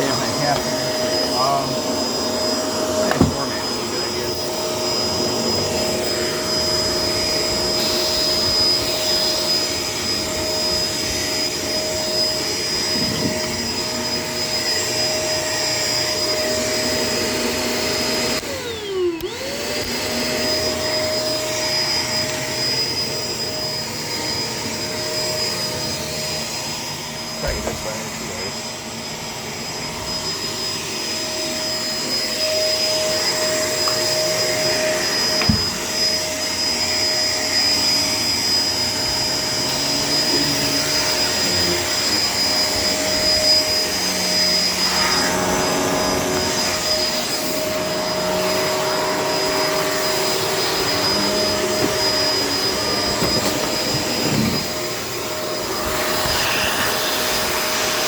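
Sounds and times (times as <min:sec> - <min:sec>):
vacuum cleaner motor whine: 0:00.0 - 0:58.0
vacuum cleaner knocks: 0:02.8 - 0:03.7, 0:35.3 - 0:36.0, 0:50.8 - 0:54.8.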